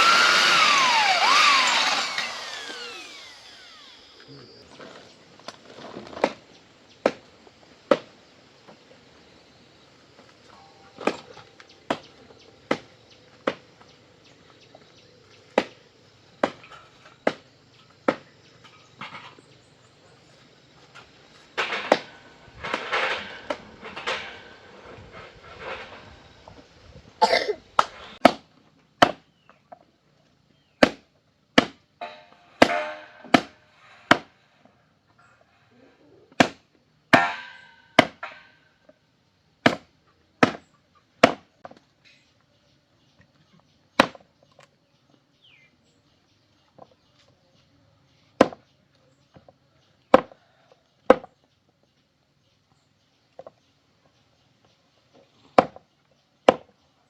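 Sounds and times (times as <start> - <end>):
hammer blows ringing: 32.0 - 33.7, 37.2 - 38.6.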